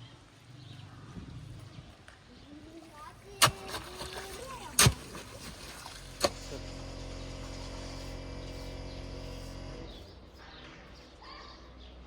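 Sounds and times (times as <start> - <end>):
birds chirping: 0.0 - 12.0
steady low hum: 4.9 - 10.8.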